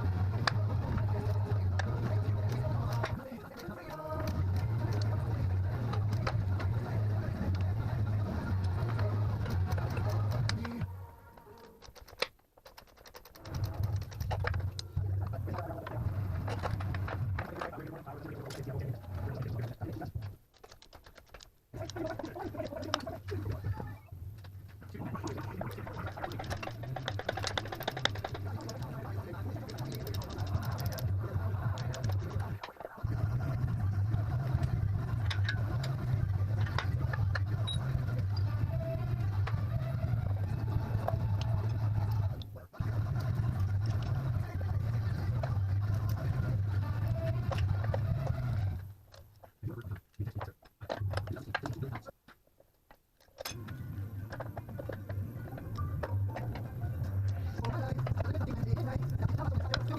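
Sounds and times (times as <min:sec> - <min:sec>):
low steady hum: 0:00.0 - 0:11.8
low mechanical hum: 0:00.0 - 0:12.6, 0:13.2 - 0:20.5, 0:21.6 - 0:52.1, 0:53.4 - 0:59.9
metal tools clicking: 0:11.6 - 0:14.9.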